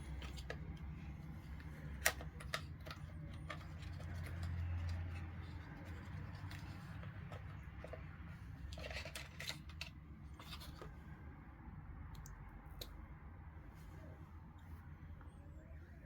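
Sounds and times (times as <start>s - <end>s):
small parts clicking and scraping: 0.0s - 11.0s.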